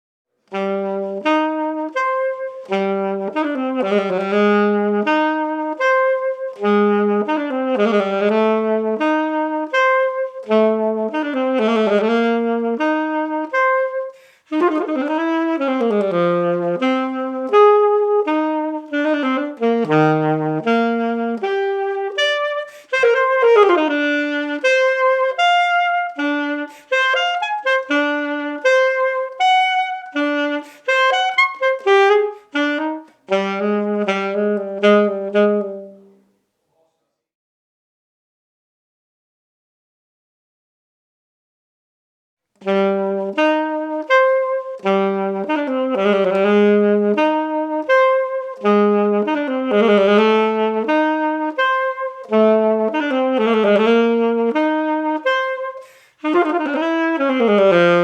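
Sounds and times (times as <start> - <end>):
alto saxophone melody: 0.4 - 36.3, 42.6 - 58.0
player's breath: 55.8 - 56.2.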